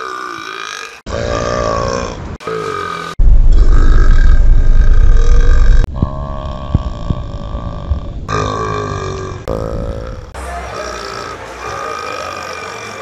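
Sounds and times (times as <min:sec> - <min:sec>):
person belching: 0:03.5 - 0:13.0.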